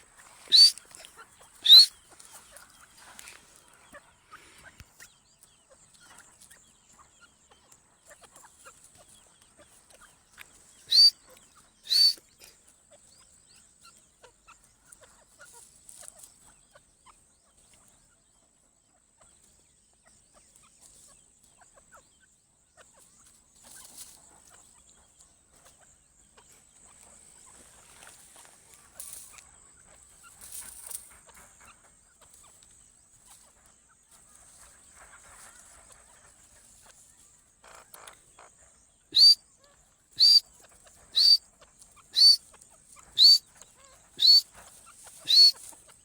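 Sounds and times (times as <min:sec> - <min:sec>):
partridge high calls: 0:00.0 - 0:05.2, 0:10.3 - 0:12.5, 0:37.6 - 0:45.9.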